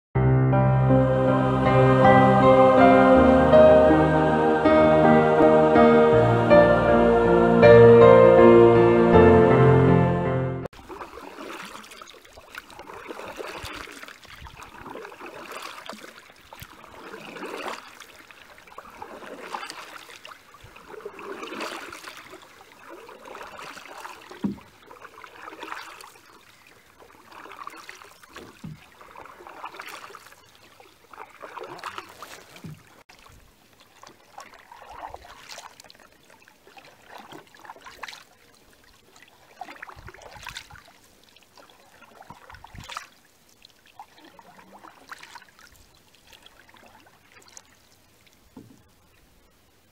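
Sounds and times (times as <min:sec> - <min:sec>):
paddle strokes in water: 0:10.7 - 0:49.9
paddle knocking against hull: 0:23.2 - 0:24.7, 0:27.4 - 0:30.0, 0:48.6 - 0:48.8.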